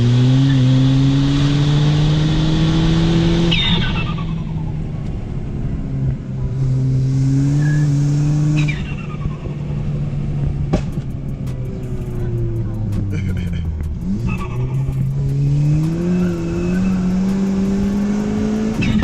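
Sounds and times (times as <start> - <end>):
car engine pulling under throttle: 0.0 - 19.0.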